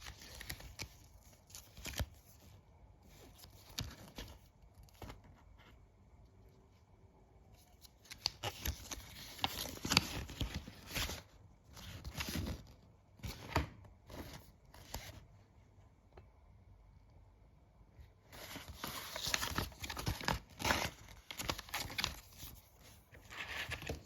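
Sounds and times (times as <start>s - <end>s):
packaging rustling and tearing: 18.4s - 22.6s.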